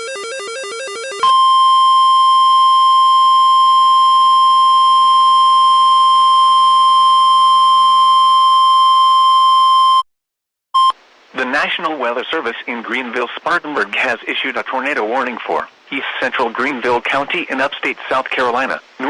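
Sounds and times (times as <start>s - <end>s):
steady loud warning beep: 1.2s - 10.0s.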